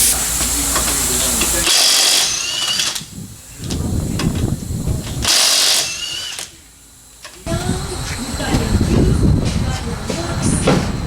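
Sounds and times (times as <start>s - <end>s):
compressed air hissing with whistle: 0.0s - 6.4s
pneumatic tool rattling: 0.0s - 6.6s.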